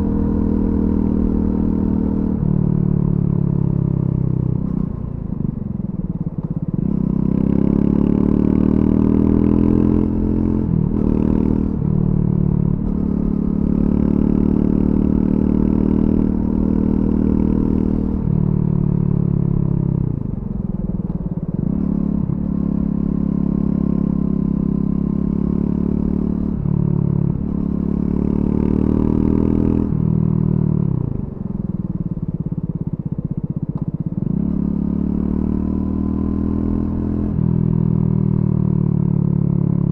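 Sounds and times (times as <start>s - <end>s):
motorcycle engine revving: 21.5s - 39.9s.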